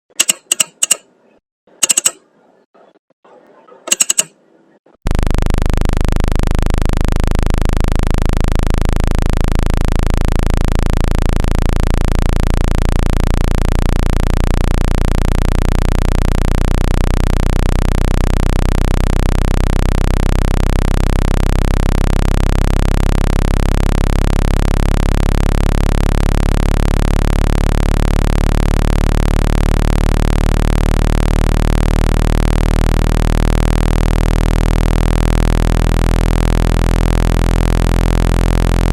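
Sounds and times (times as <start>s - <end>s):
short click: 0.1s - 1.1s, 1.8s - 2.3s, 3.9s - 4.4s
loud low electronic tone: 5.1s - 38.9s.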